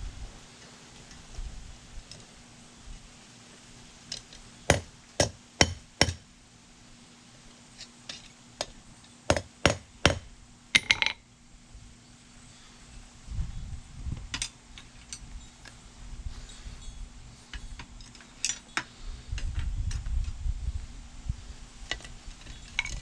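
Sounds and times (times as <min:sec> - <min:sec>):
faint steady hum: 0:00.0 - 0:23.0
hammer striking steel on anvil: 0:04.7 - 0:06.2.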